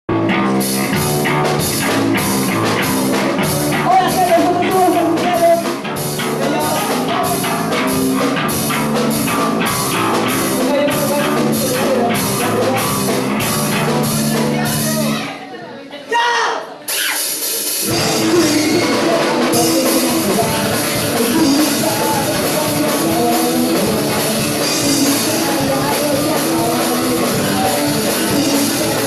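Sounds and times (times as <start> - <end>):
drum kit fast beat: 0.1 - 15.2, 16.9 - 29.0
sustained guitar chords: 17.8 - 29.0.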